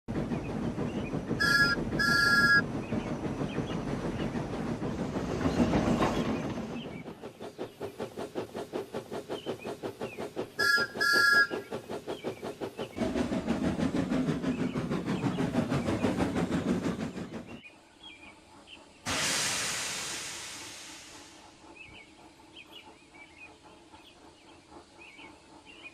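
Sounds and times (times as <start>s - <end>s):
steam hissing: 0.1s - 25.9s
steam locomotive chuffing: 0.1s - 25.9s
two-tone train whistle toots: 1.4s - 2.6s, 10.6s - 11.6s.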